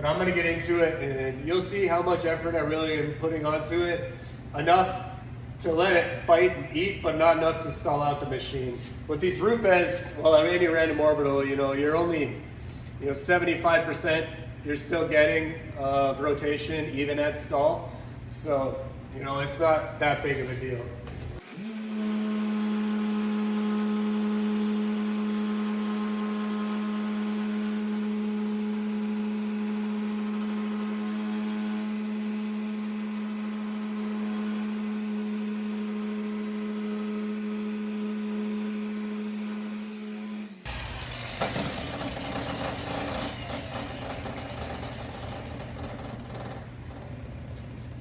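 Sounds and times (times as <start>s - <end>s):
orbital polisher running: 21.4s - 45.6s.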